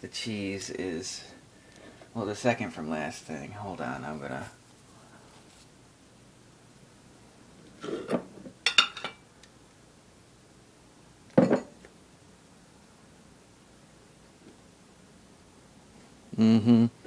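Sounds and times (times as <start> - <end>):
kitchenware clinking and knocking: 7.8 - 9.2, 11.4 - 11.8.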